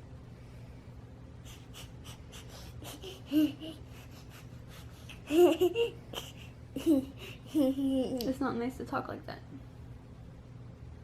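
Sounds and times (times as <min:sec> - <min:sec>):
child huffing breathily: 0:01.4 - 0:07.6
child whining: 0:01.5 - 0:08.0.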